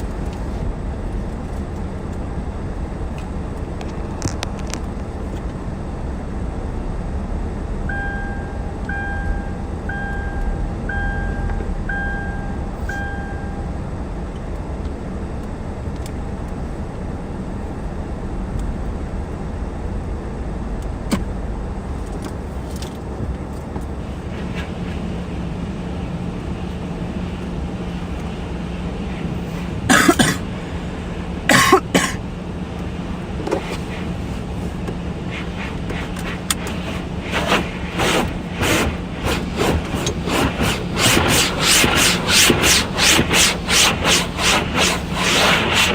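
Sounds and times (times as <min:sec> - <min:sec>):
car wash machinery rumble and hiss: 0:00.0 - 0:45.9
steady hum: 0:00.0 - 0:45.9
beeps: 0:07.9 - 0:13.8.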